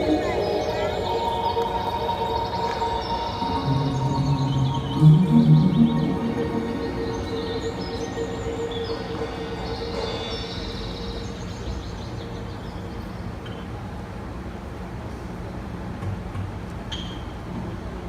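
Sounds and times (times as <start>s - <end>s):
high chirps: 0.0s - 12.6s
low rumble: 3.2s - 9.6s.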